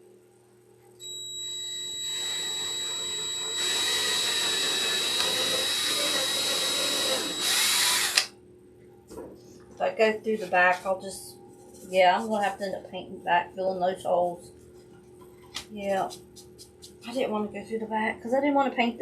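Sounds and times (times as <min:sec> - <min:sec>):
electric drill drilling into wood: 0:01.0 - 0:08.3.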